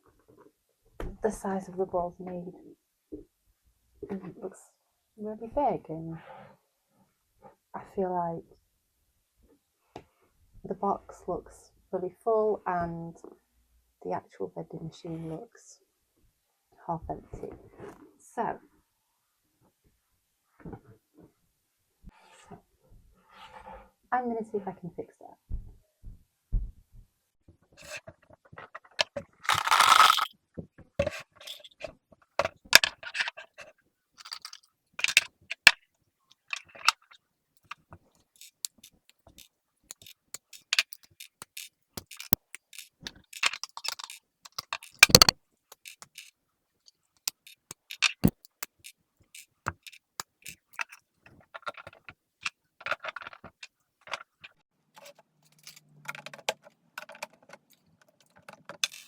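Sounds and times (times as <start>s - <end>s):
plastic bricks clicking and rattling: 29.0s - 30.3s, 34.2s - 46.3s, 47.2s - 51.0s, 56.2s - 59.0s
loud sharp plastic clack: 29.5s - 30.3s, 38.4s - 46.3s.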